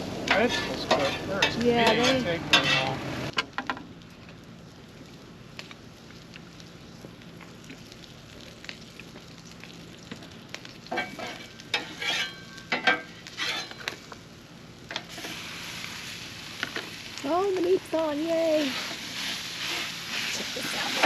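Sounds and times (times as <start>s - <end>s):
vegetables sizzling on a griddle: 0.0s - 3.4s, 5.5s - 21.0s
metal spatula scraping griddle: 0.3s - 3.0s, 11.0s - 13.8s, 18.6s - 21.0s.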